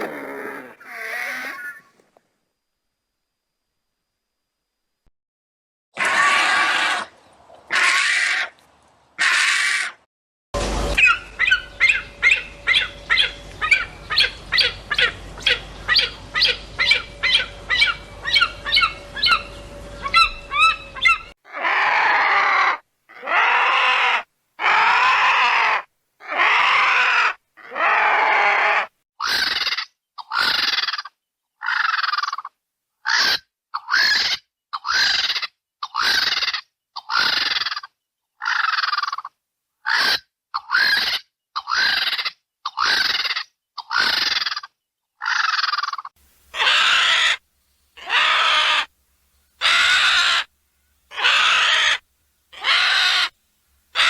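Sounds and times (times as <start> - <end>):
harsh raspy bird calls: 0.0 - 1.9, 11.0 - 47.4, 48.0 - 48.9, 49.6 - 50.5, 51.1 - 54.0
steady hum: 10.6 - 21.4.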